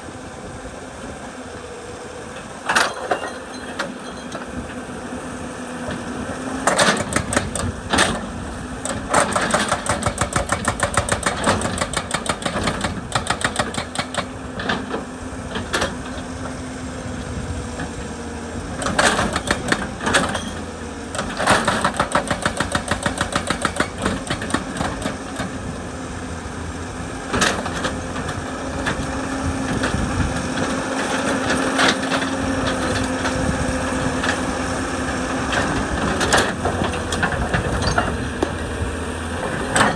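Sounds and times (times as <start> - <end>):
excavator diesel engine running: 0.0 - 39.9
hydraulic breaker hammering stone: 2.7 - 4.6, 6.6 - 15.0, 18.8 - 25.8, 35.6 - 38.8.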